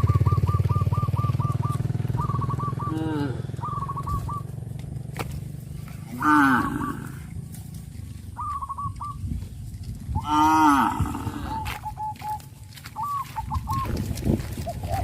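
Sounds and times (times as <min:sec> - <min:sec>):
cattle mooing: 0:06.0 - 0:07.3, 0:10.2 - 0:11.7.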